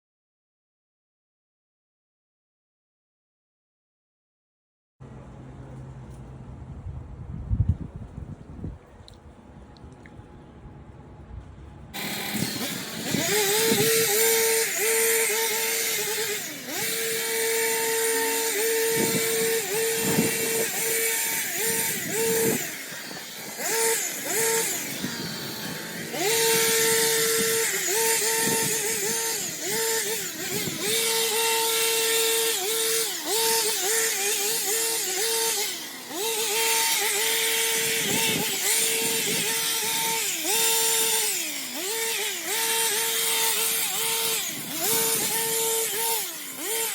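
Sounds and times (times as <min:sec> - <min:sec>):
garden trimmer running: 0:11.9 - 0:46.9.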